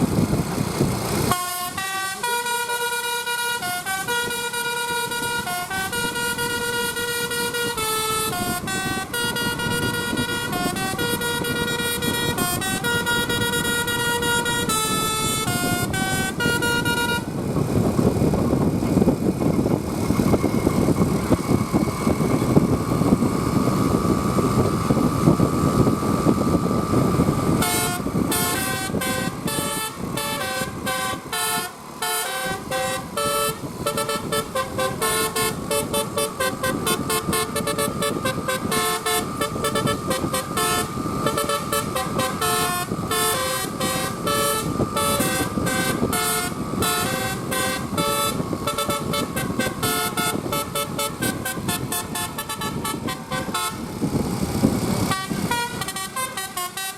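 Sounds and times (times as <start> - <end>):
low engine noise: 0.0 - 56.9
musical air horn tune: 1.3 - 17.3, 27.4 - 53.9, 55.1 - 56.9.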